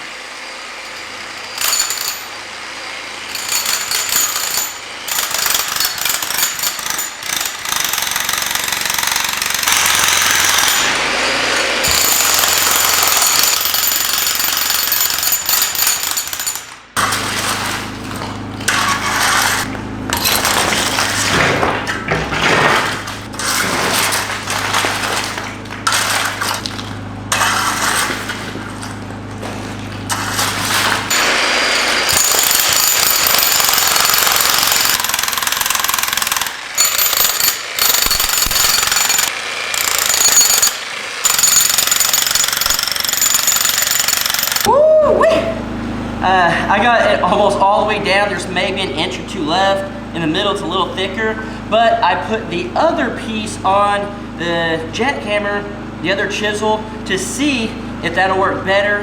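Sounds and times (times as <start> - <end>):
jackhammer chiselling concrete: 0.7 - 44.7.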